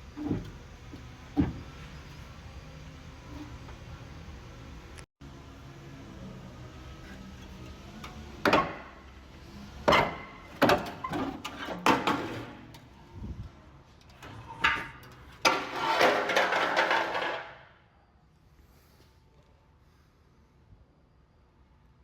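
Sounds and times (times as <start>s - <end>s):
knocks and clanks: 0.2s - 1.9s, 8.0s - 9.0s, 9.8s - 12.8s, 14.2s - 17.6s.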